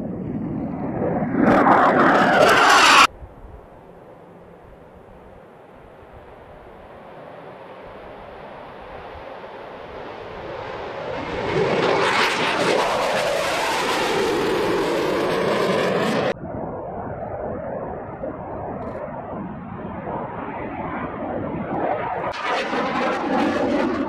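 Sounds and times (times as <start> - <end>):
fighter jet engine noise: 0.0 - 3.1, 5.8 - 24.0.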